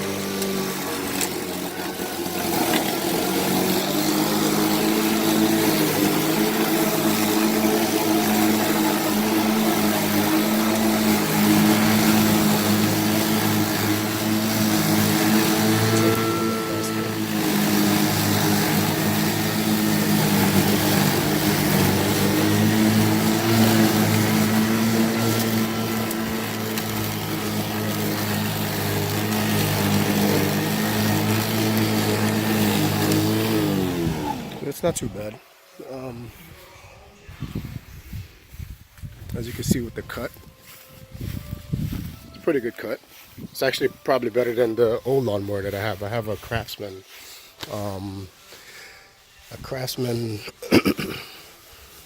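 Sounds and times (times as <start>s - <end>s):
electric lawn mower running: 0.0s - 36.6s, 38.5s - 50.2s
grass being cut: 0.0s - 52.0s.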